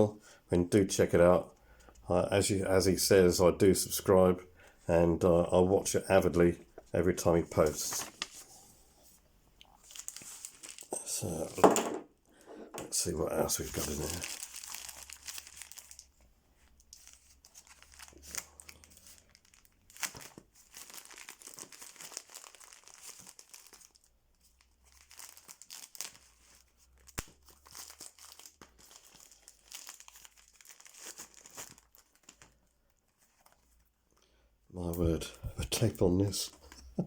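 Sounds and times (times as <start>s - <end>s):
packaging crinkling and rustling: 6.8s - 8.6s, 9.7s - 11.9s, 13.0s - 34.0s.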